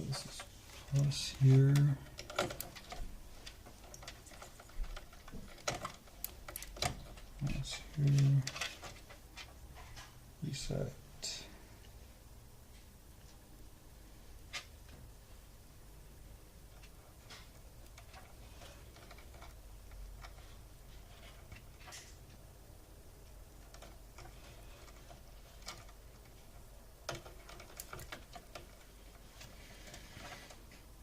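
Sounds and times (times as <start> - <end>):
plastic wires rustling: 0.0 - 10.9, 16.6 - 31.0.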